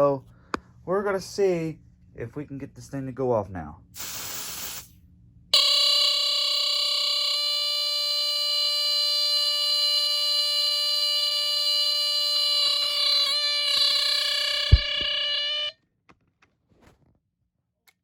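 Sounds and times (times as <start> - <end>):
smoke alarm tone: 5.6 - 15.7.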